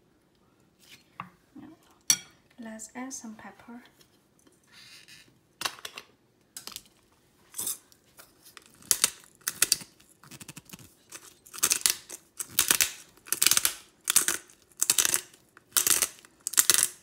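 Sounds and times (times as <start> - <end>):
gritty pepper grinder crackling: 8.5 - 17.0.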